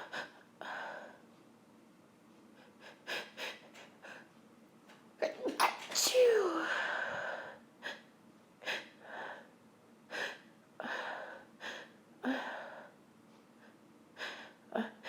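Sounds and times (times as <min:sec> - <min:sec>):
woman gasping: 0:05.2 - 0:07.6.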